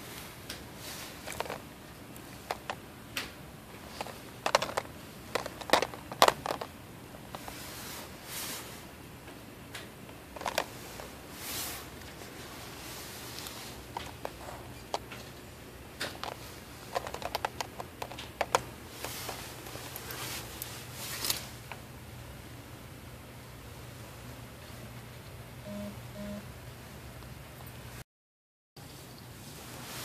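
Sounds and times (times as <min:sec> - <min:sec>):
soft rustles: 0:00.0 - 0:02.8, 0:10.4 - 0:15.4, 0:18.9 - 0:21.6
handling clicks and taps: 0:02.4 - 0:03.4, 0:04.0 - 0:06.7, 0:09.8 - 0:10.7, 0:16.0 - 0:20.0.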